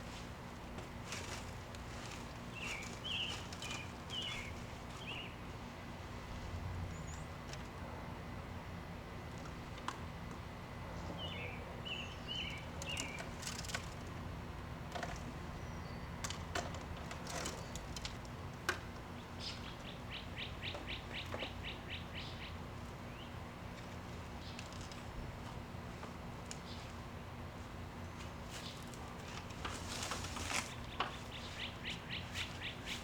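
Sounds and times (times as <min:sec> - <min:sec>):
birds chirping: 0:02.0 - 0:05.5, 0:11.0 - 0:13.7, 0:19.1 - 0:24.9, 0:30.4 - 0:33.0
bird trill: 0:19.4 - 0:22.6.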